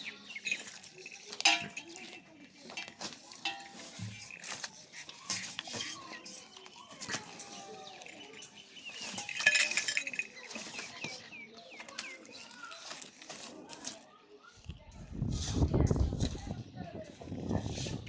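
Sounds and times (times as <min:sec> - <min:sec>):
goat chewing and crunching corn: 0:00.0 - 0:14.3.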